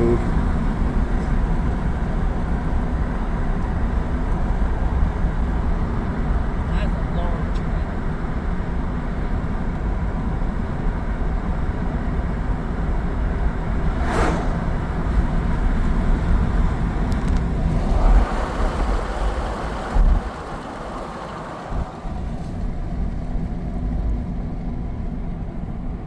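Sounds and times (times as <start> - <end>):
vehicle driving on a road: 0.0 - 26.0
brief swish: 13.9 - 15.3.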